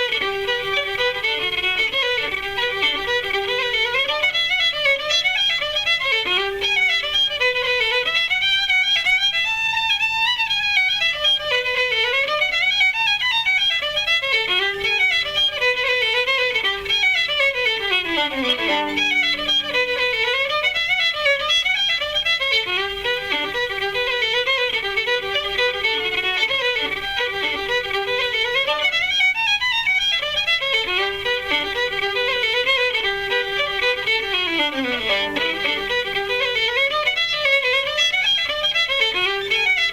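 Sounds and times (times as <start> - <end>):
steady lower accompaniment: 0.0 - 4.9, 17.8 - 29.3, 30.7 - 37.6
fiddle playing fast melody: 0.0 - 39.9.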